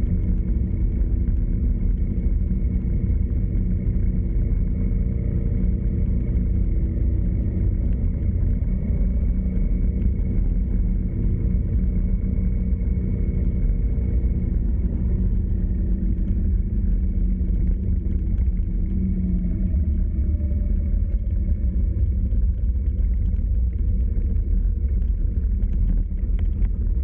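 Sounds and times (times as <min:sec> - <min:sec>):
vehicle engine and road rumble: 0:00.0 - 0:27.0.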